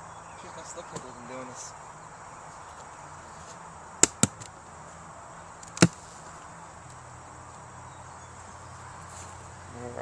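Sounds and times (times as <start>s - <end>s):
wooden beehive cracking open: 4.0s - 4.5s, 5.6s - 6.0s.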